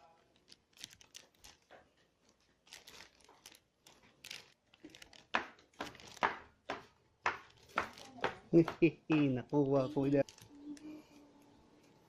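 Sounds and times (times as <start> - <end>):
packaging crinkling and rustling: 0.0 - 8.4, 9.9 - 10.7.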